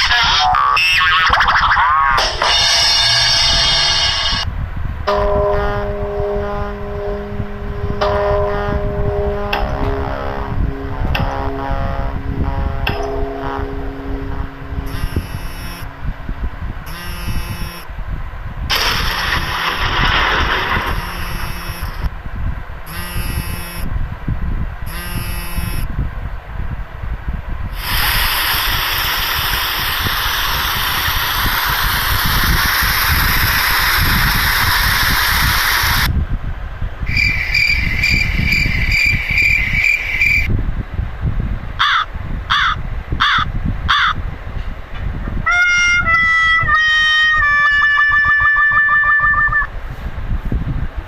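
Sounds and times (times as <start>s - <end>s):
comedy sound effects: 0.0s - 4.4s, 45.5s - 49.7s
stepped falling tone: 5.1s - 17.9s, 18.7s - 22.1s
warbling high beep: 12.9s - 16.0s, 16.9s - 17.8s, 18.7s - 22.1s
long hissing noise: 27.7s - 36.1s.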